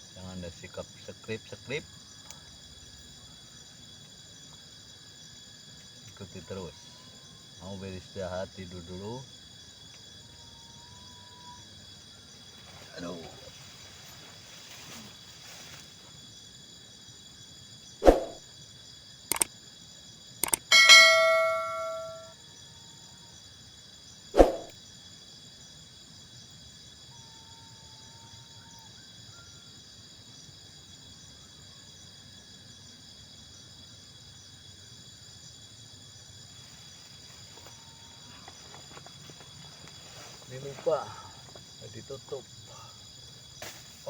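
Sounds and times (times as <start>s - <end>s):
insects chirring: 0.0s - 44.0s
sharp knocks: 20.4s - 22.2s
metal object ringing: 20.4s - 22.3s.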